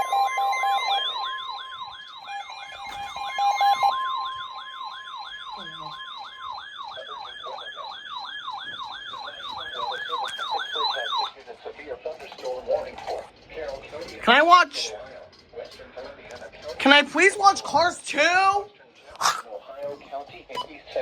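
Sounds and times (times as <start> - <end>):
siren-like electronic warble: 0.0 - 11.4
steady alarm tone: 0.0 - 11.4, 14.1 - 14.9, 16.8 - 18.6.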